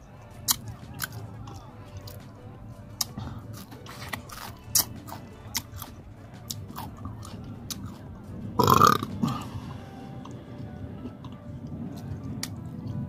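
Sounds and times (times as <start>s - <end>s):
chewing and biting food: 0.0s - 13.0s
loud burp: 8.6s - 9.6s.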